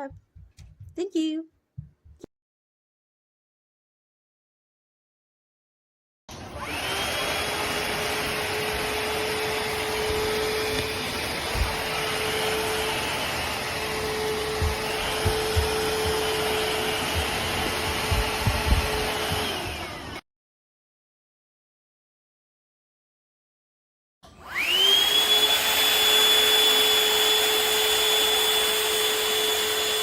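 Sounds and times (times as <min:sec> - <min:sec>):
vacuum mop motor whining: 0:06.3 - 0:20.2, 0:24.2 - 0:30.0
low knocks: 0:14.5 - 0:16.5, 0:17.1 - 0:19.4.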